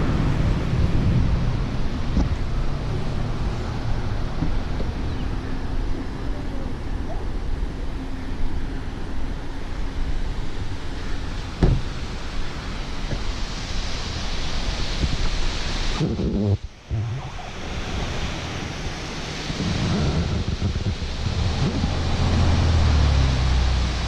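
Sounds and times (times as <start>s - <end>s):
waterfall roaring: 0.0s - 24.0s
wind buffeting microphone: 0.0s - 24.0s
thump: 11.6s - 11.9s.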